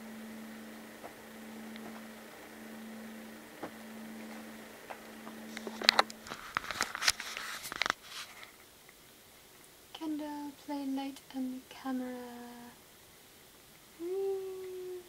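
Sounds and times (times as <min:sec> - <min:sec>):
faint low hum: 0:00.0 - 0:15.0
sharp clicks and rattles of handling: 0:05.5 - 0:08.6.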